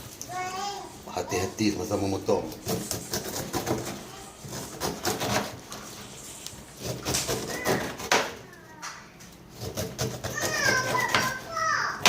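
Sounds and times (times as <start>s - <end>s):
knife cutting pineapple rind: 2.3s - 8.4s, 9.4s - 12.0s.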